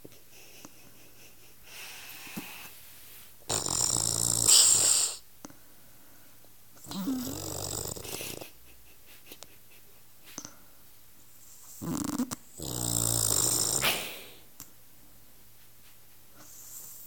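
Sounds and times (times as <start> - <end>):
woman snoring: 3.5 - 5.2, 6.8 - 8.4, 11.8 - 14.4.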